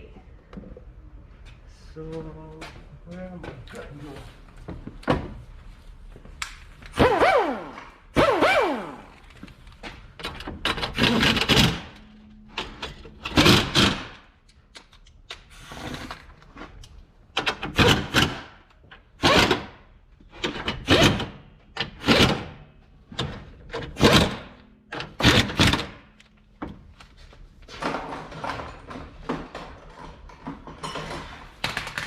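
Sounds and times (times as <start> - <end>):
tools knocking and clattering: 9.8 - 15.1, 27.7 - 32.0.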